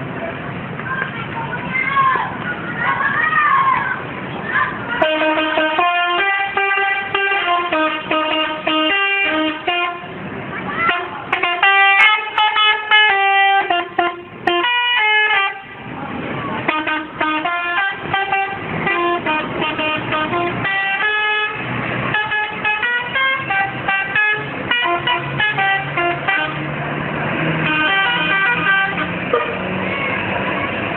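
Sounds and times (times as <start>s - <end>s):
musical bus air horn: 5.0s - 10.2s, 10.8s - 15.8s, 16.6s - 26.7s, 27.5s - 30.8s.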